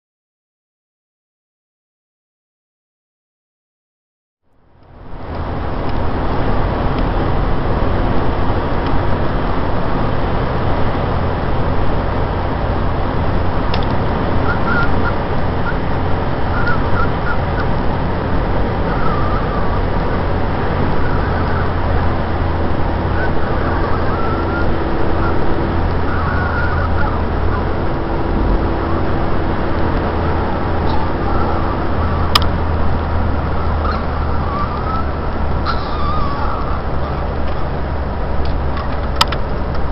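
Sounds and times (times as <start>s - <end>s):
car road noise in cabin: 4.5s - 39.9s
small dog whining: 18.8s - 19.9s, 23.2s - 28.0s, 30.0s - 32.5s, 33.5s - 37.4s.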